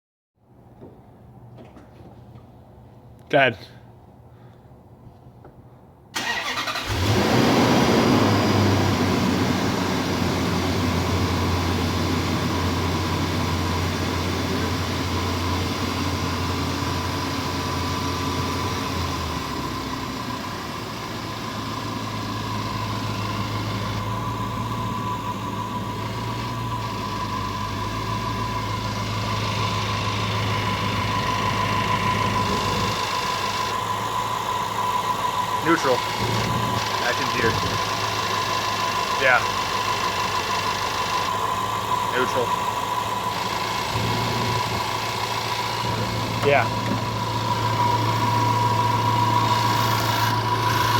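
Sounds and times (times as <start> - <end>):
car engine starting and idling: 6.1 - 50.9
fuel pump whine: 6.1 - 50.9.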